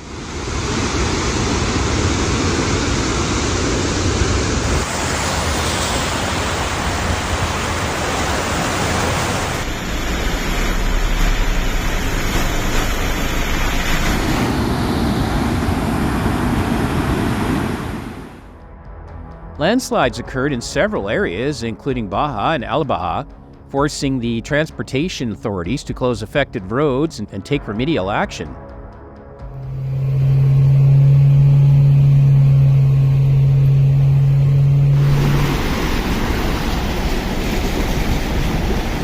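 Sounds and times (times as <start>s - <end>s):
wind: 0.0s - 18.5s
rain: 4.3s - 14.4s, 34.9s - 39.0s
running water: 4.6s - 14.5s, 33.0s - 39.0s.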